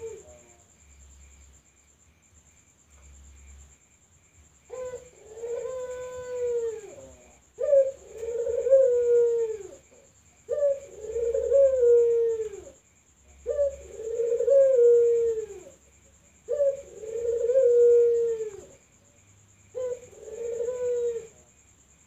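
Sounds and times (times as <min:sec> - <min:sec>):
dove cooing: 0:00.0 - 0:00.5, 0:04.7 - 0:15.8, 0:16.4 - 0:18.8, 0:19.7 - 0:21.4.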